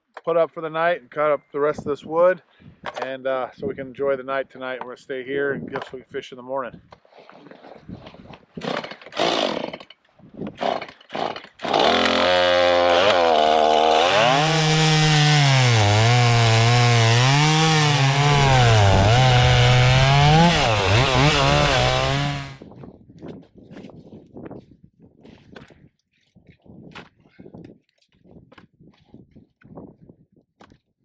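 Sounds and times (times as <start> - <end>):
chainsaw revving and cutting wood: 8.6 - 9.9, 10.6 - 22.6
chainsaw starter rasps: 8.6 - 22.6.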